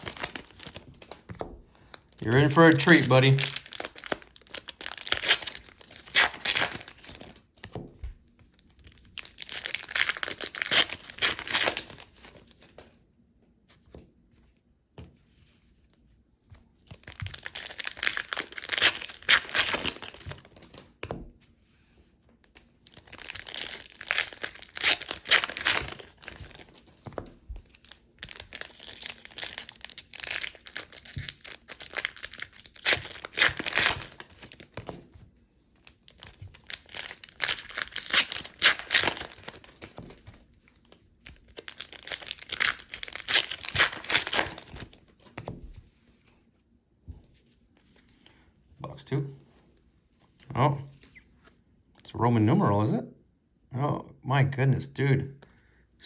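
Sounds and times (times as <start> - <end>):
card wrappers tearing and crinkling: 0.0 - 7.7, 8.6 - 12.8, 16.8 - 21.1, 22.5 - 35.2, 35.8 - 45.5.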